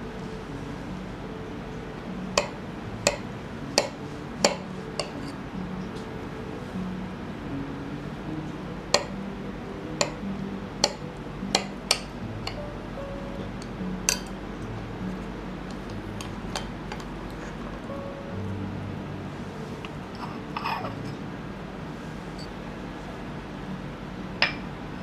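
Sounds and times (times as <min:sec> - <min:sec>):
soft background music: 0:00.0 - 0:25.0
dishes and cutlery clinking: 0:02.4 - 0:06.0, 0:08.9 - 0:09.2, 0:10.0 - 0:18.5, 0:19.4 - 0:22.5, 0:24.4 - 0:24.8.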